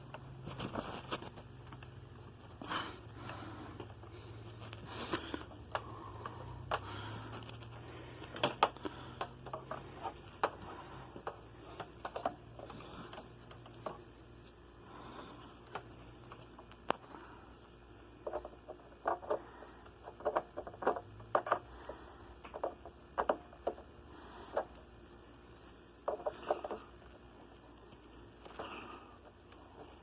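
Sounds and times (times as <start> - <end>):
objects being handled: 0.0 - 21.8
steady low hum: 0.0 - 30.0.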